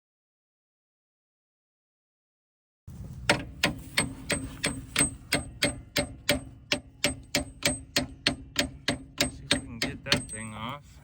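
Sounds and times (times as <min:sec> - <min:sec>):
ratchet wrench clicking: 0:03.6 - 0:10.7.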